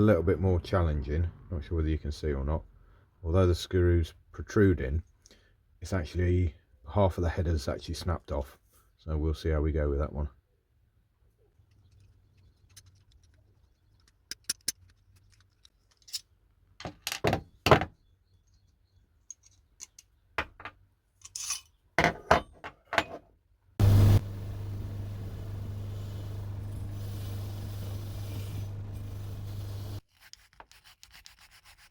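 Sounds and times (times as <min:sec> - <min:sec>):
metal tools clinking: 0:21.2 - 0:21.8
electric power tool humming: 0:23.8 - 0:30.0.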